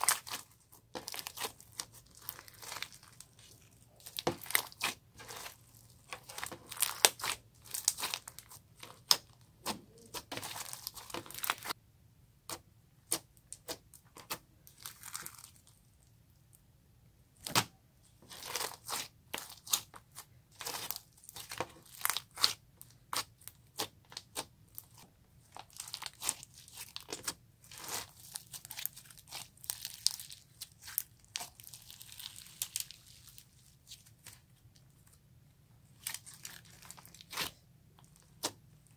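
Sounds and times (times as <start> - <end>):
hands squishing slime: 0.0 - 11.8, 18.2 - 34.6, 35.9 - 38.9.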